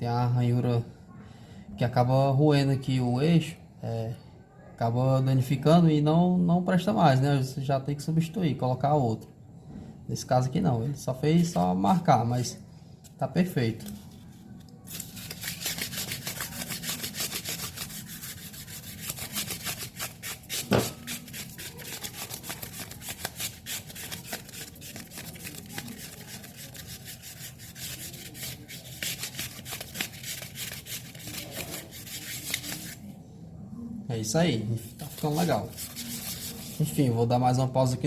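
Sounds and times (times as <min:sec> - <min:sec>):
sandpaper rubbing on metal shaft: 0:14.9 - 0:33.0, 0:34.9 - 0:37.1
sharp knock: 0:20.6 - 0:21.0.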